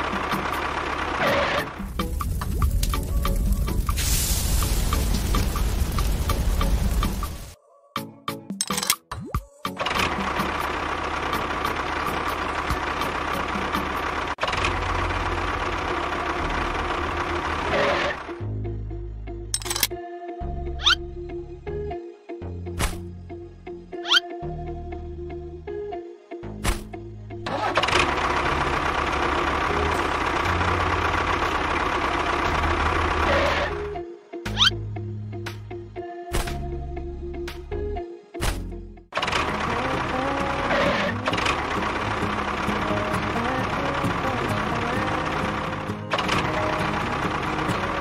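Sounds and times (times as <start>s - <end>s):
motor running with rattling noise: 9.8s - 18.4s, 27.5s - 33.8s, 39.2s - 48.0s.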